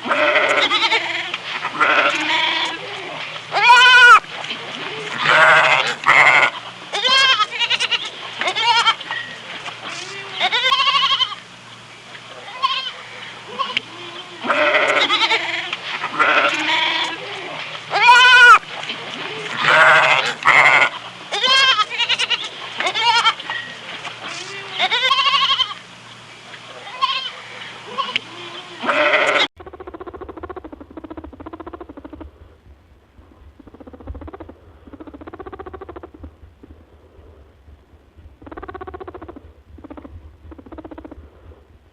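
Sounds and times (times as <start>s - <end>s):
goats bleating: 0.0s - 9.1s, 9.8s - 11.4s, 12.4s - 23.5s, 24.2s - 25.8s, 26.7s - 29.5s
small animal rattling calls: 33.6s - 36.7s, 38.3s - 41.2s.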